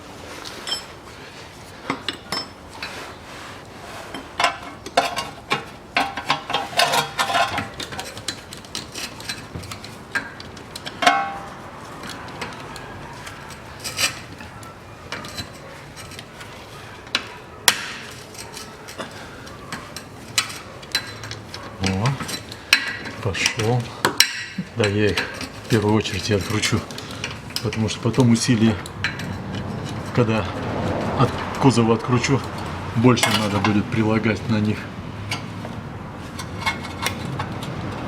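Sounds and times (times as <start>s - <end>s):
steel tools clinking on metal: 4.1s - 16.5s, 18.0s - 30.5s, 31.2s - 35.5s.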